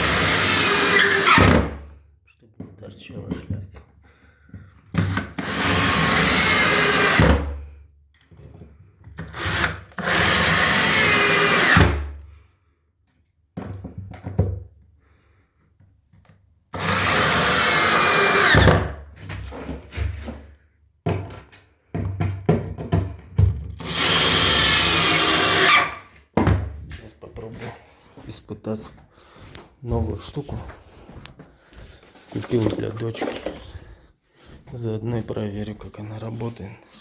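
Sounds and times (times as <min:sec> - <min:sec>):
cordless drill whining: 0:00.0 - 0:01.9, 0:05.1 - 0:07.6, 0:09.2 - 0:12.1, 0:16.3 - 0:19.0, 0:23.8 - 0:26.2.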